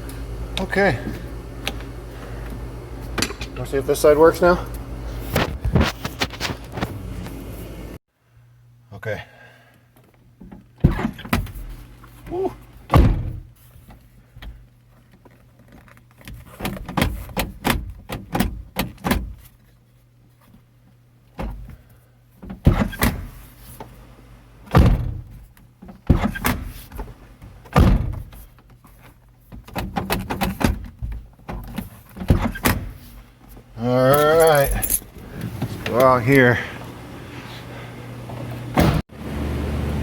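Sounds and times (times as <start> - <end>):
car door thudding shut: 12.9 - 13.5, 24.7 - 25.3, 27.7 - 28.3, 38.7 - 39.0.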